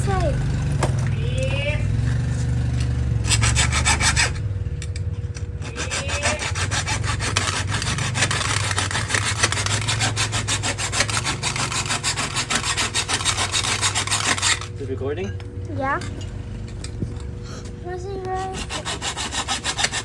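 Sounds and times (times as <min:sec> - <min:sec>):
steady low hum: 0:00.0 - 0:20.0
sawing into spray paint can: 0:03.2 - 0:04.4, 0:05.6 - 0:14.8, 0:18.2 - 0:20.0.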